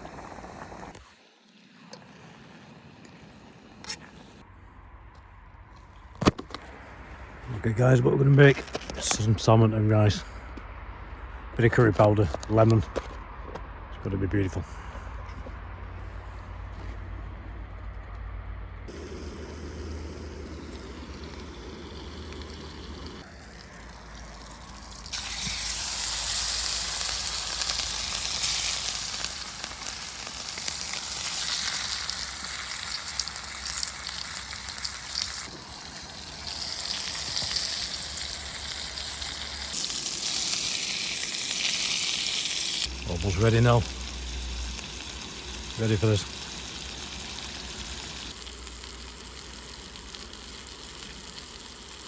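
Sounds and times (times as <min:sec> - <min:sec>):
fish sizzling in a pan: 0:18.9 - 0:52.0.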